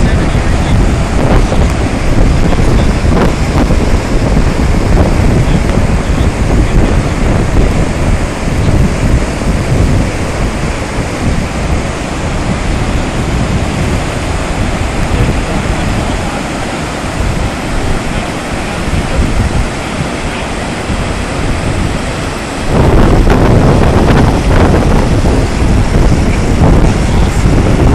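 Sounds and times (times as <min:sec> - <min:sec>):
floodwater rushing: 0:00.0 - 0:27.9
wind buffeting microphone: 0:00.0 - 0:27.9.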